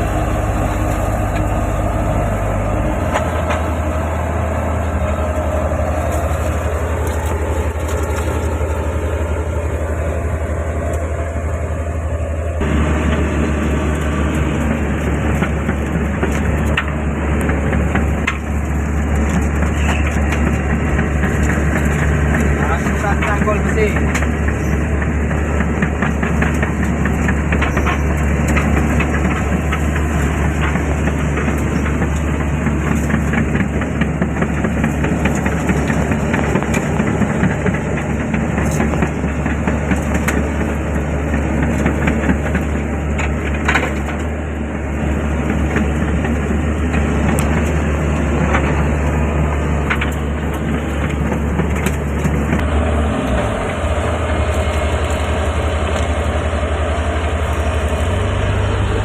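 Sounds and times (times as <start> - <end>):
excavator diesel engine running: 0.0 - 59.0
mid-pitched hum: 0.0 - 59.0
cracks and clanks: 13.9 - 56.4.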